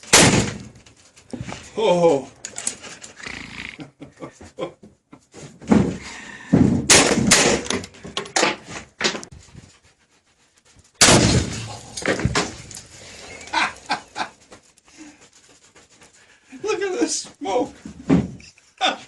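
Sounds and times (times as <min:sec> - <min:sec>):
gunfire: 0:00.1 - 0:00.7, 0:06.9 - 0:07.7, 0:11.0 - 0:11.8.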